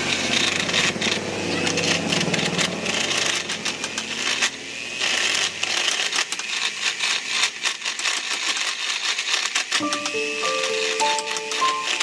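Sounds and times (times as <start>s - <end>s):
rapid clattering and hiss: 2.5s - 9.8s.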